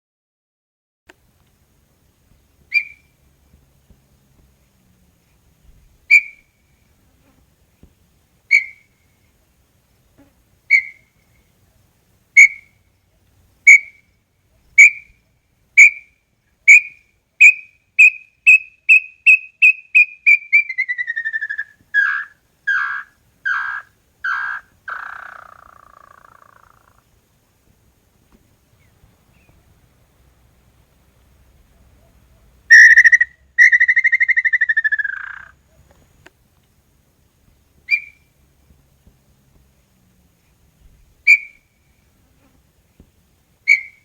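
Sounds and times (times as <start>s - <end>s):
bird whistling song: 2.7s - 3.1s, 6.1s - 6.5s, 8.5s - 9.0s, 10.7s - 11.2s, 12.4s - 12.7s, 13.7s - 14.1s, 14.8s - 15.2s, 15.8s - 27.0s, 32.7s - 35.6s, 37.9s - 38.3s, 41.2s - 41.7s, 43.6s - 44.0s.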